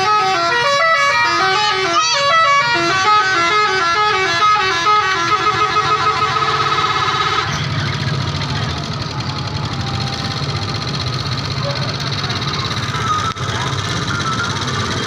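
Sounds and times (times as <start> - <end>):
air horns playing a tune: 0.0 - 7.7.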